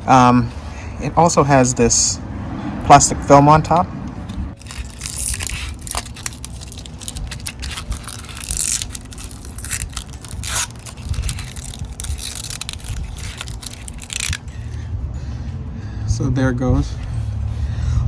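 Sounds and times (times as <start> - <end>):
low background rumble: 0.0 - 18.0
thin plastic crinkling and tearing: 4.6 - 14.6.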